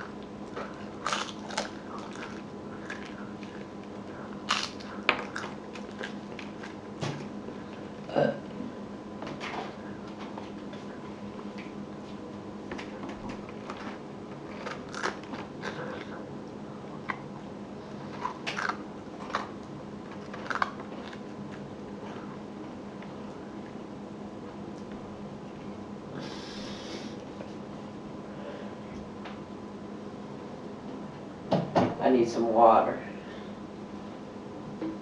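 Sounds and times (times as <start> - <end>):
person chewing crunchy food: 0.0 - 8.1, 10.0 - 23.9
faint steady hum: 0.0 - 35.0.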